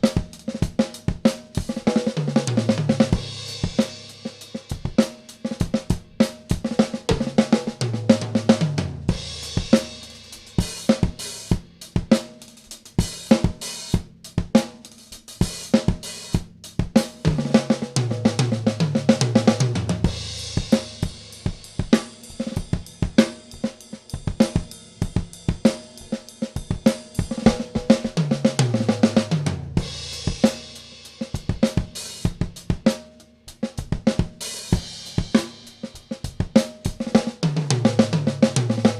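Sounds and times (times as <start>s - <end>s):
drum kit playing a groove: 0.0s - 38.9s
tom fill: 15.6s - 33.0s.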